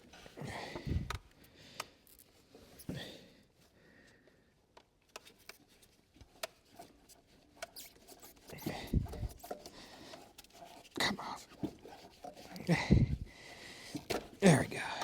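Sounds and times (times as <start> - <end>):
tools clicking and scraping: 1.8 - 2.9, 5.1 - 15.0.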